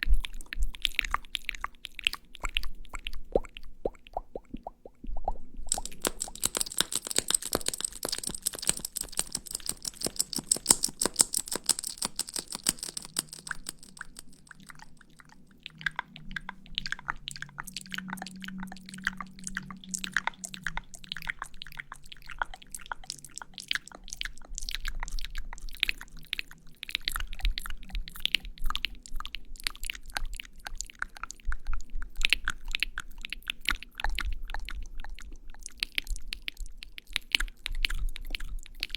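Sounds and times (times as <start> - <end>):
lipstick sticky crackling clicks: 5.7 - 14.5.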